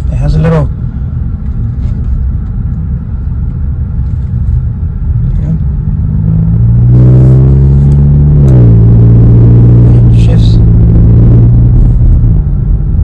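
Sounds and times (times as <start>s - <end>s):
car exhaust rumble: 0.0s - 13.0s.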